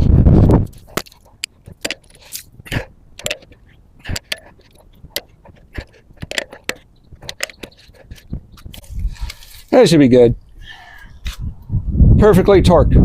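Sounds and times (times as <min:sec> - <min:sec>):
torque wrench metal clicks: 0:03.2 - 0:08.3.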